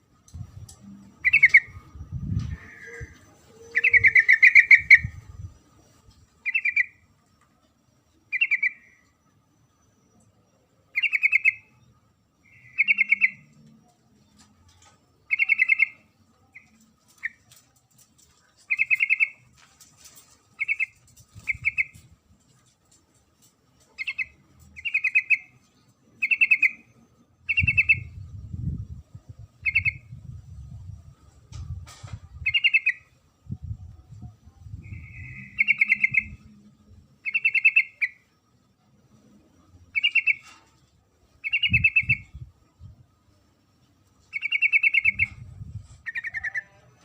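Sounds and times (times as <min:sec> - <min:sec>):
bulbul trilled calls: 0:01.2 - 0:01.8, 0:02.4 - 0:05.2, 0:06.4 - 0:07.0, 0:11.0 - 0:11.7, 0:12.4 - 0:13.5, 0:15.3 - 0:17.4, 0:18.7 - 0:19.4, 0:20.6 - 0:22.0, 0:24.0 - 0:25.5, 0:26.2 - 0:26.9, 0:27.5 - 0:28.2, 0:29.6 - 0:30.1, 0:32.4 - 0:33.1, 0:34.8 - 0:36.5, 0:37.2 - 0:38.2, 0:40.0 - 0:40.5, 0:41.4 - 0:42.3, 0:44.3 - 0:45.4, 0:46.0 - 0:46.8.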